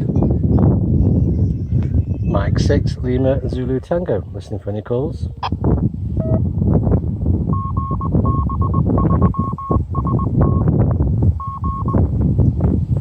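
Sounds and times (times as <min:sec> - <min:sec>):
wind buffeting microphone: 0:00.0 - 0:13.0
morse code beeps from radio: 0:07.5 - 0:10.7, 0:11.4 - 0:12.0.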